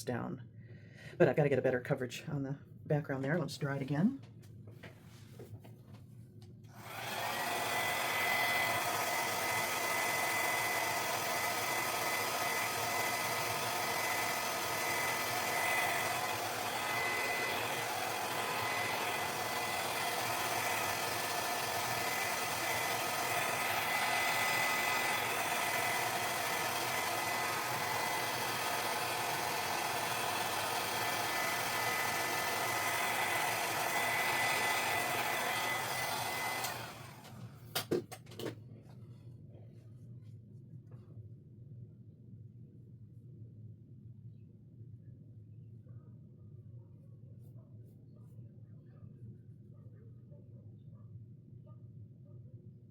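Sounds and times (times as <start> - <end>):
hair dryer blowing: 6.7 - 37.9.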